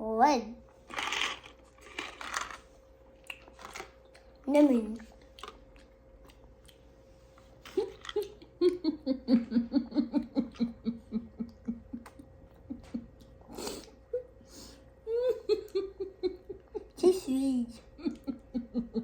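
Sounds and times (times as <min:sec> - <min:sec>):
person laughing: 0:07.7 - 0:13.2, 0:15.1 - 0:19.0.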